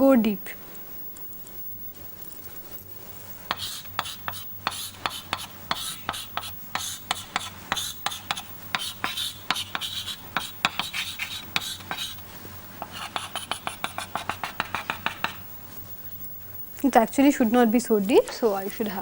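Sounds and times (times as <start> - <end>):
pen scratching on paper: 3.5 - 12.2, 12.8 - 15.4.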